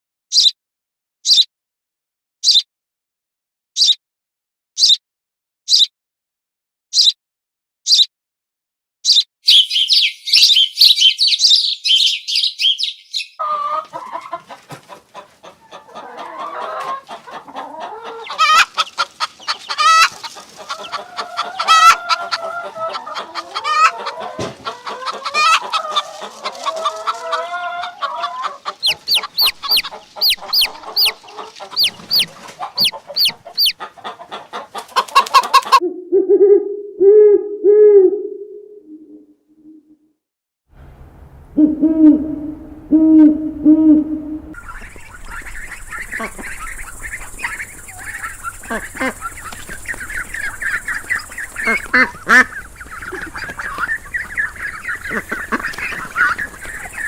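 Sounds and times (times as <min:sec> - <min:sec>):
chickens clucking: 0:13.4 - 0:36.0, 0:41.6 - 0:57.0
high falling peeps: 0:28.0 - 0:34.2, 0:41.6 - 0:57.0
dense high chirping: 0:28.6 - 0:33.8, 0:44.6 - 0:57.0.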